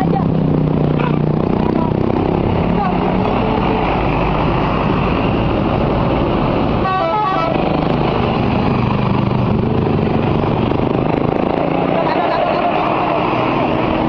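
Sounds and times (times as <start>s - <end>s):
engine and road noise: 0.0s - 14.0s
bus musical air horn: 6.8s - 7.7s.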